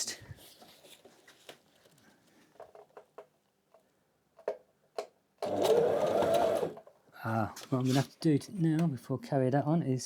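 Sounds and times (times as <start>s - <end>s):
electric sewing machine stitching: 5.4s - 6.8s.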